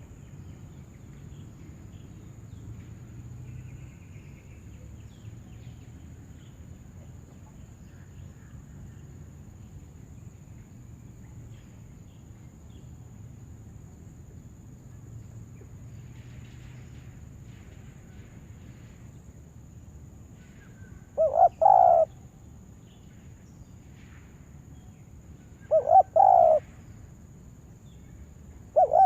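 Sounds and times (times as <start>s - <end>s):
insect drone: 0.0s - 29.0s
small birds chirping: 20.4s - 23.9s, 24.7s - 27.1s, 27.8s - 29.0s.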